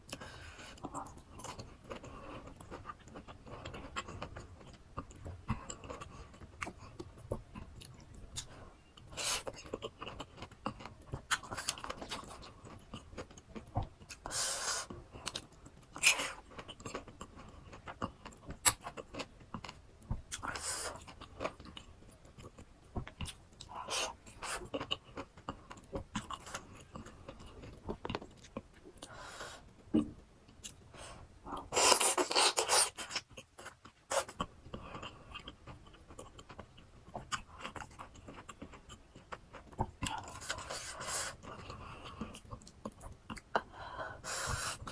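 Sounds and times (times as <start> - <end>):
chewing and crunching fruit: 15.0 - 29.1, 31.5 - 43.6.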